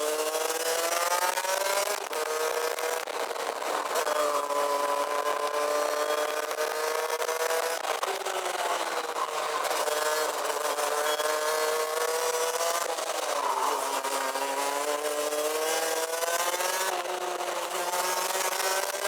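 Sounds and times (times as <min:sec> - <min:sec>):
kart engine revving: 0:00.0 - 0:19.0.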